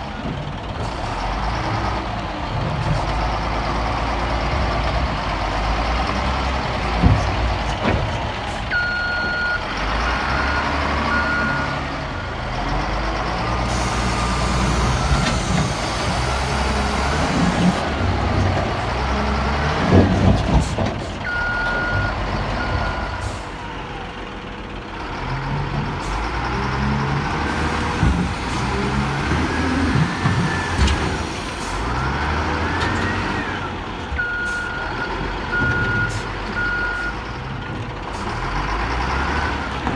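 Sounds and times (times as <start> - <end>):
diesel machinery engines revving: 0.0 - 39.9
reversing alarm beeping: 8.7 - 9.6, 10.4 - 11.8, 21.2 - 23.4, 34.2 - 37.2.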